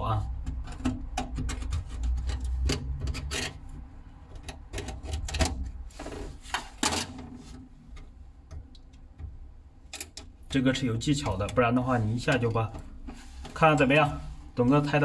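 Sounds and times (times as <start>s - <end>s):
small tools clicking and scraping: 0.4s - 7.2s.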